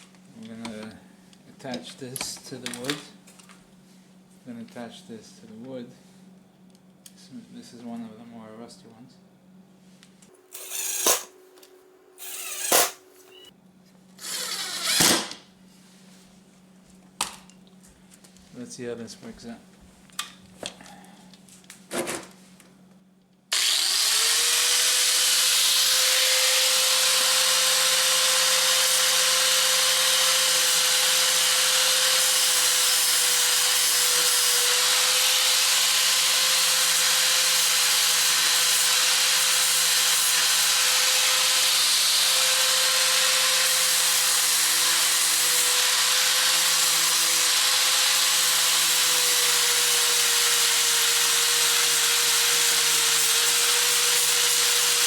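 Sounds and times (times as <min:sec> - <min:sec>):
sanding disc grinding metal: 0:23.9 - 0:55.0.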